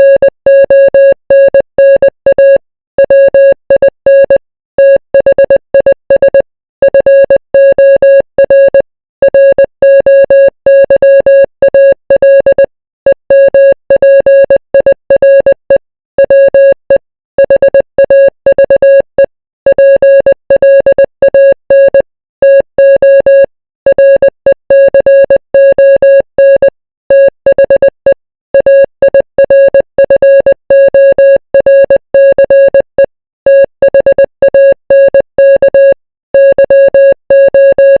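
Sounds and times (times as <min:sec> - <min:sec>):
morse code beeps: 0:00.0 - 0:38.0.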